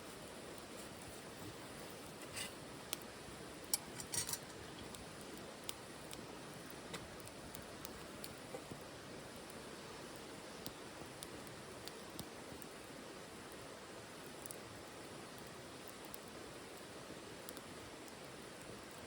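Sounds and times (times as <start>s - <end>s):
wood fire crackling: 0.0s - 19.0s.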